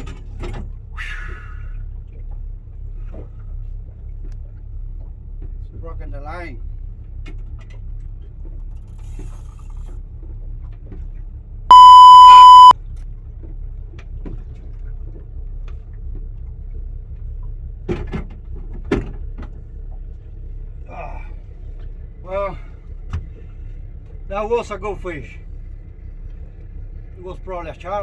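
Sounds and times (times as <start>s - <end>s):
censor bleep tone: 11.7s - 12.7s.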